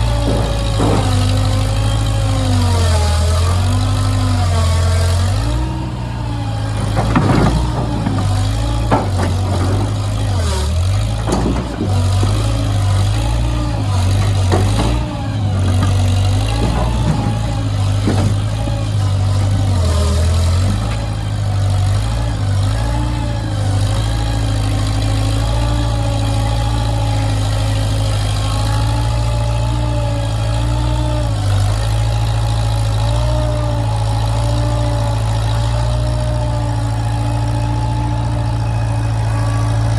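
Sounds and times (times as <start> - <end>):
sharp knocks or clanks: 0.0 - 21.2
engine running: 0.0 - 39.9.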